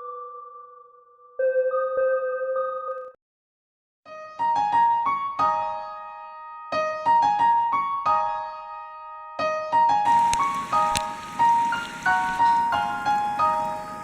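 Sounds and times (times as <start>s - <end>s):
piano music: 10.1s - 14.0s.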